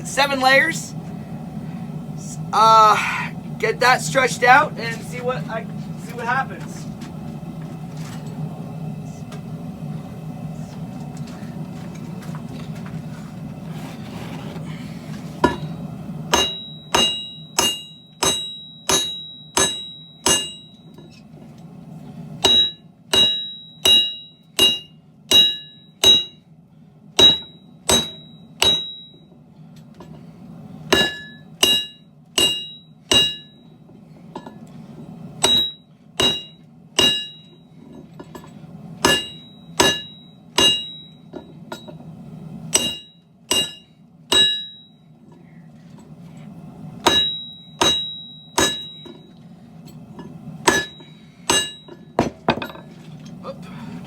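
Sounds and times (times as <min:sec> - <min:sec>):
steady low hum: 0:00.0 - 0:54.0
hammer ringing on anvil: 0:15.4 - 0:21.0, 0:22.4 - 0:26.4, 0:27.2 - 0:29.3, 0:30.9 - 0:33.7, 0:35.4 - 0:42.0, 0:42.7 - 0:45.0, 0:47.0 - 0:49.4, 0:50.6 - 0:52.8.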